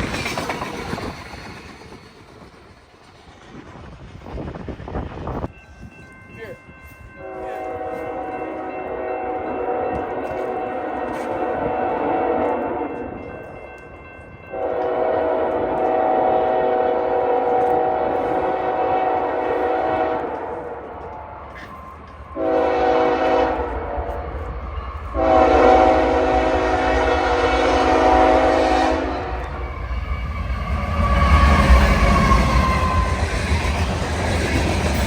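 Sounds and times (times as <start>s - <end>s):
locomotive air horn blasts: 14.5s - 21.8s, 22.4s - 24.2s, 25.2s - 29.3s.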